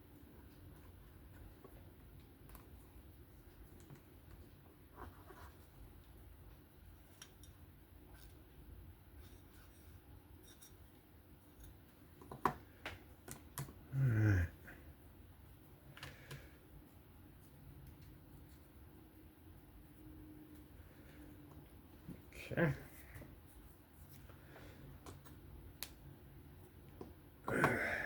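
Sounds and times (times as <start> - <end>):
handling small knife parts: 9.2 - 10.8.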